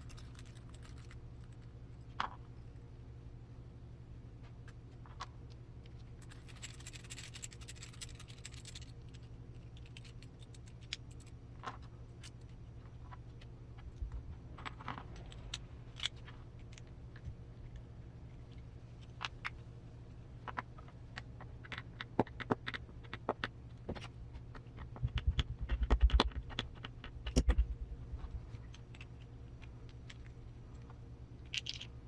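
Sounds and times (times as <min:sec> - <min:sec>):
small gearbox parts clicking: 0:00.0 - 0:01.6, 0:05.2 - 0:12.4, 0:31.4 - 0:31.9.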